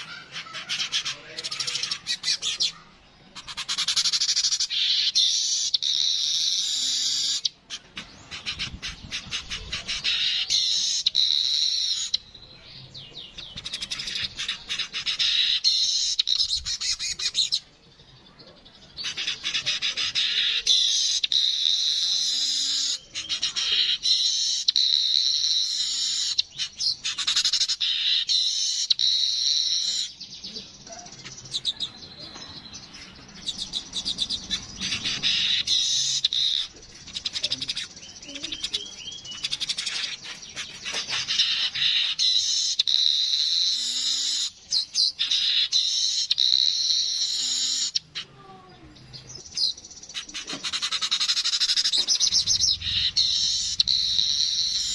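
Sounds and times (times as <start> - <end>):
birds chattering: 0.0 - 54.9.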